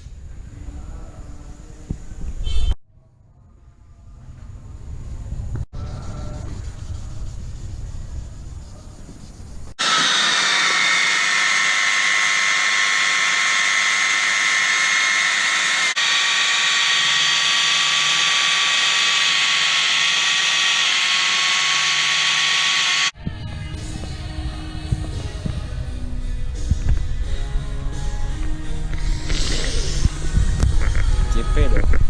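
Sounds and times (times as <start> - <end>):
power tool whining: 9.8 - 23.2.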